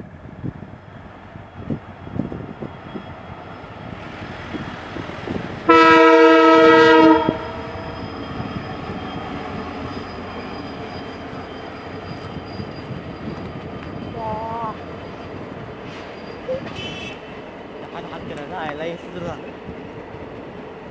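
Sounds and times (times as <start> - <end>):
train rumble and clatter: 0.0 - 20.9
locomotive air horn blast: 5.7 - 7.8.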